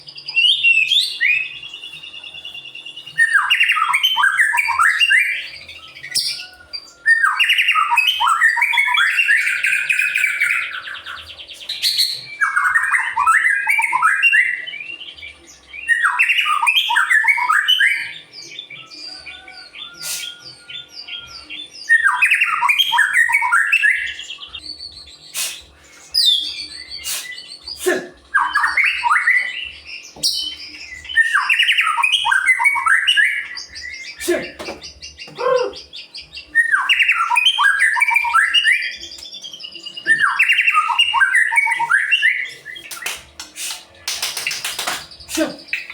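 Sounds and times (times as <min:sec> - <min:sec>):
songbird singing harsh notes: 0:25.3 - 0:45.9.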